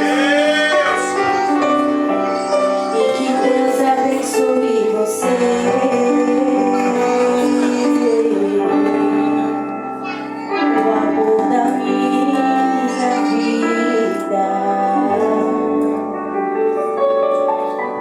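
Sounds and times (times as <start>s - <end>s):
voices singing with instruments: 0.0s - 9.7s.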